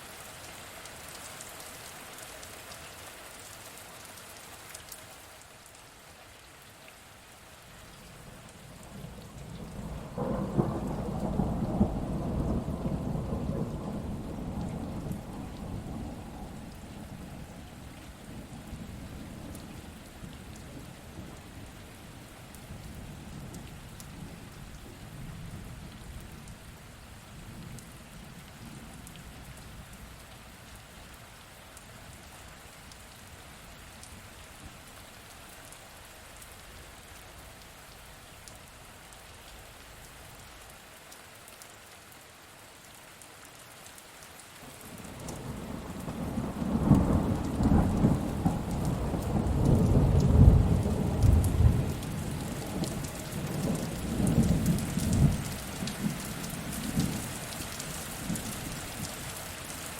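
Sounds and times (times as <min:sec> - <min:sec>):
steady rain: 0:00.0 - 0:59.9
thunder rumbling: 0:09.0 - 0:17.8, 0:45.2 - 0:57.3.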